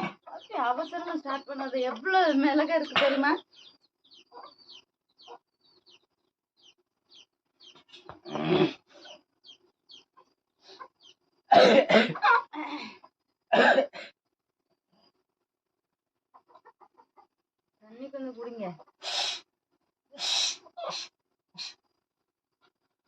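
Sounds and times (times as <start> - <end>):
faint bird chirps: 0.0 - 11.6, 20.1 - 22.0
person coughing: 2.9 - 3.4, 11.5 - 12.3, 13.5 - 14.1.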